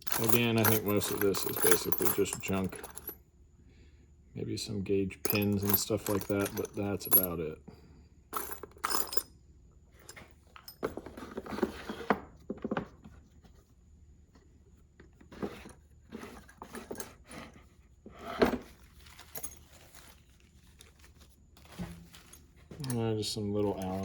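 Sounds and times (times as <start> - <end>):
metal tools clinking and rattling: 0.0 - 3.2, 5.3 - 7.4, 8.4 - 9.3, 18.4 - 20.2, 21.6 - 24.0.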